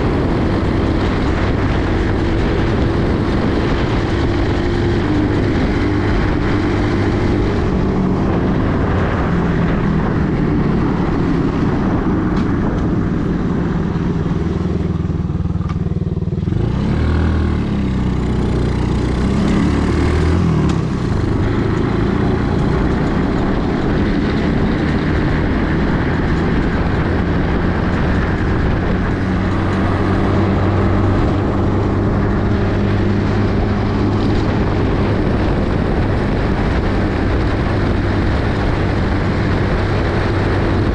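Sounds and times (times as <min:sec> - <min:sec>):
steady rushing noise: 0:00.0 - 0:40.9
small engine running: 0:12.4 - 0:40.9.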